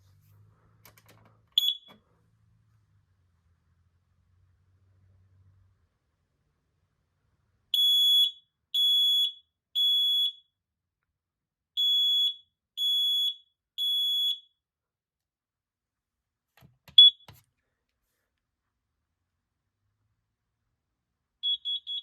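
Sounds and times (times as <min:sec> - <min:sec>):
smoke alarm beeping: 0:01.6 - 0:02.0, 0:07.8 - 0:10.5, 0:11.8 - 0:14.6, 0:16.9 - 0:17.4, 0:21.4 - 0:22.0.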